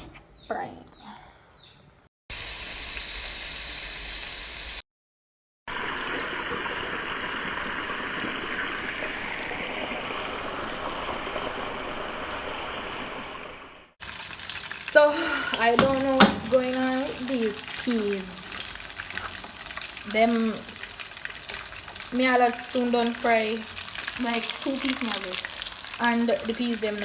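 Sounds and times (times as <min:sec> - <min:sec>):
dough sizzling in hot oil: 0:02.3 - 0:04.8, 0:14.0 - 0:27.0.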